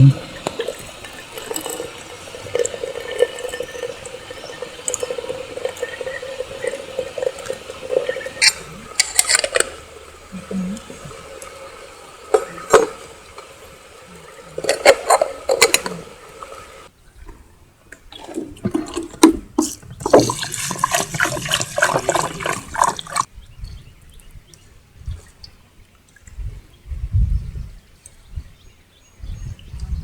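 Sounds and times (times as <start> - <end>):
water pouring into a pot: 0.0 - 16.9, 20.0 - 23.3
faint outdoor ambience: 0.0 - 30.0.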